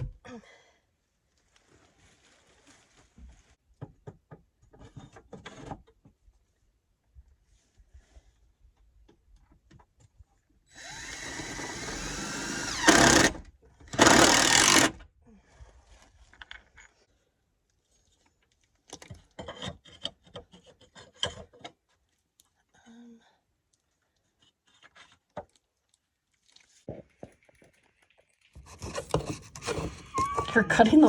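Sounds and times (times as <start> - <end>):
cordless drill motor whining: 10.7 - 15.0.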